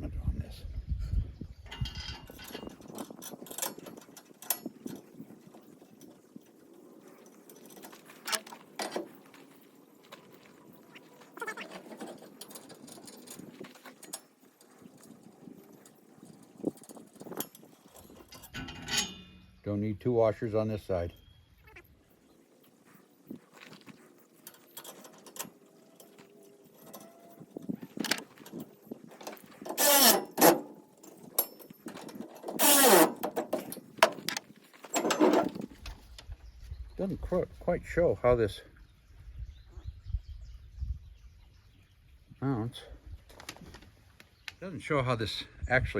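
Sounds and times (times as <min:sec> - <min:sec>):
metal parts clattering: 0:01.7 - 0:05.2, 0:16.6 - 0:19.6, 0:23.6 - 0:35.8
power drill motor bursts: 0:29.7 - 0:30.6, 0:32.6 - 0:33.2.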